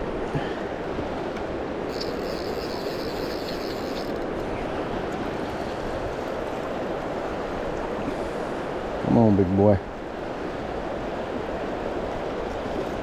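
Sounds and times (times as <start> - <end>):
river water rushing: 0.0 - 9.2.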